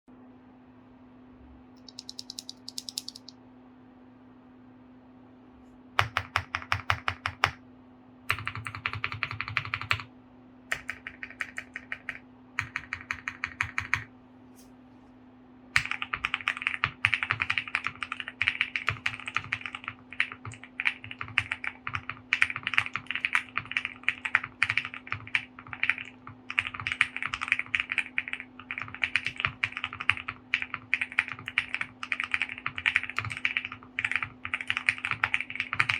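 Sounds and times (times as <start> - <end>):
faint steady hum: 0.1 - 35.9
mechanical keyboard typing: 1.8 - 3.3, 6.0 - 7.6, 8.3 - 10.1, 10.7 - 14.1, 15.8 - 35.9.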